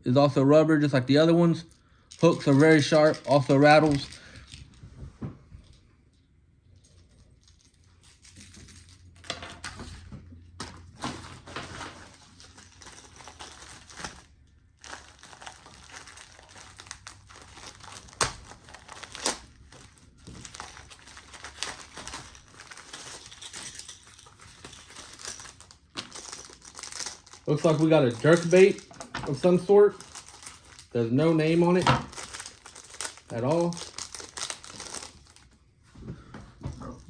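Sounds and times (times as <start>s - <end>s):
plastic packaging crinkling: 11.7s - 35.6s.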